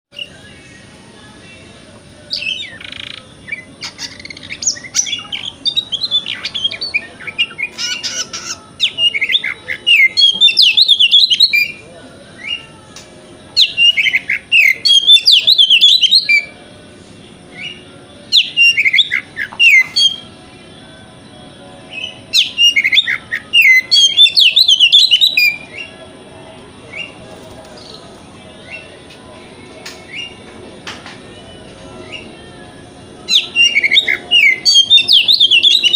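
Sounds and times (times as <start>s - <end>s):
bird singing whistled chattering notes: 2.3s - 11.8s, 13.6s - 16.5s, 17.6s - 20.2s, 21.9s - 25.9s, 33.3s - 35.9s.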